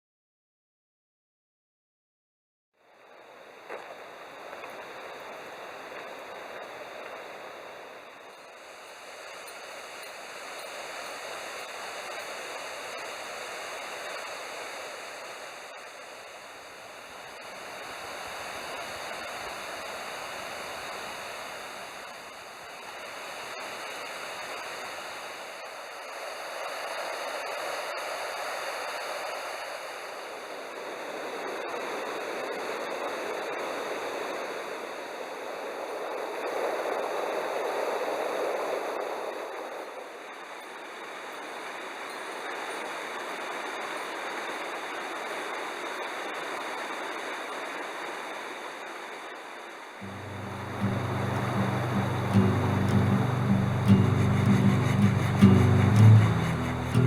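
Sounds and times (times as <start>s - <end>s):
rushing flowing water: 3.0s - 30.5s, 50.0s - 57.0s.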